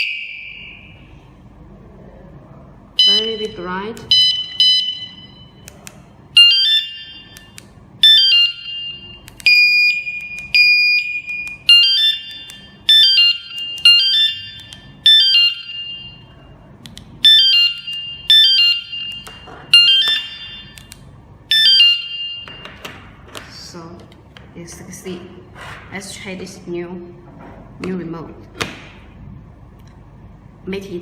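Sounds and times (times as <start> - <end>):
car alarm chirps: 0.0 - 1.2, 3.0 - 5.6, 6.3 - 7.4, 8.0 - 16.5, 17.2 - 20.8, 21.5 - 22.6
long steady alarm beeps: 0.0 - 1.2, 3.0 - 5.7, 6.3 - 16.6, 17.2 - 20.9, 21.5 - 22.8.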